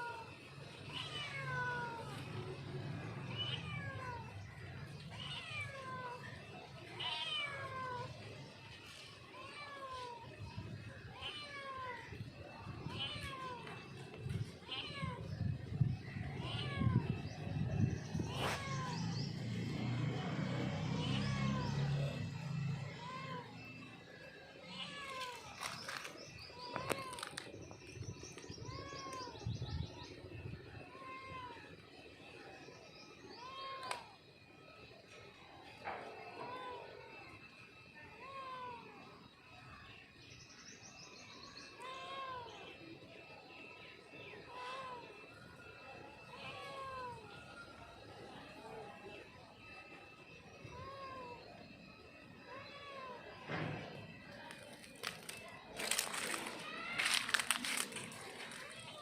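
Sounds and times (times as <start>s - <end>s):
cat meowing: 0.0s - 2.2s, 3.2s - 4.3s, 5.0s - 6.3s, 6.9s - 8.2s, 11.1s - 12.1s, 12.8s - 15.4s, 16.2s - 17.2s, 18.0s - 19.4s, 20.6s - 23.7s, 24.6s - 25.8s, 30.9s - 31.7s, 46.3s - 47.2s
cat calling: 0.9s - 2.2s, 6.9s - 8.2s, 16.2s - 19.4s, 20.6s - 23.7s.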